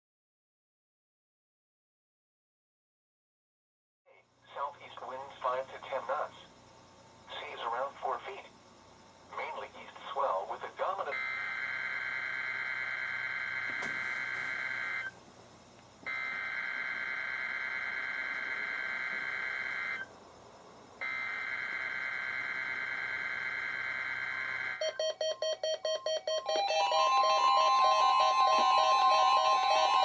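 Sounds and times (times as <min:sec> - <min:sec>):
rapid alarm beeping: 0:11.1 - 0:15.2, 0:16.1 - 0:20.1, 0:21.0 - 0:30.0
steady alarm tone: 0:11.1 - 0:15.2, 0:16.0 - 0:20.2, 0:21.0 - 0:30.0.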